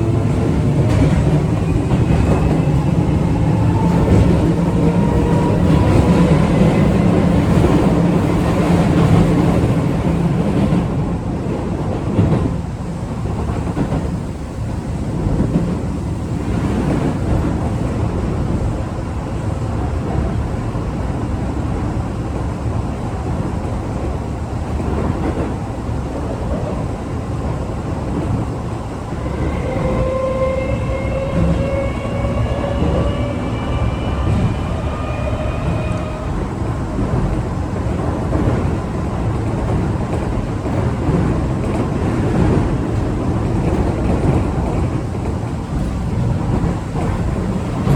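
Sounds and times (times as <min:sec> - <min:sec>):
wheel and rail noise: 0:27.4 - 0:47.9.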